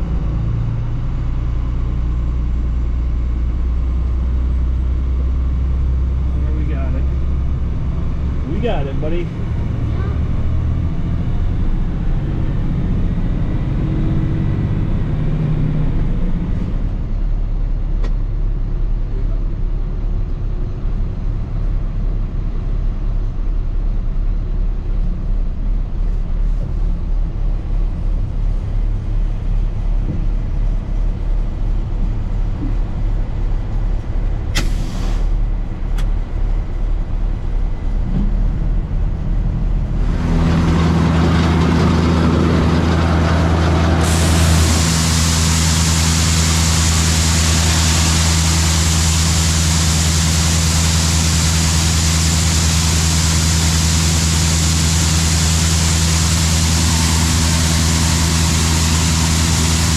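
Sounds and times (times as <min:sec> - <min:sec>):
farm machinery engine rumbling: 0:00.0 - 0:17.6, 0:27.4 - 0:59.9
short sharp sounds: 0:34.6 - 0:35.4.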